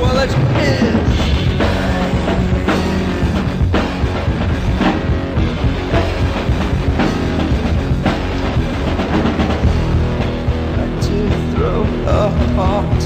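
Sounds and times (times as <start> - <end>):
bass guitar: 0.0 - 13.0
drums playing a steady beat: 0.0 - 13.0
electric guitar: 0.0 - 13.0.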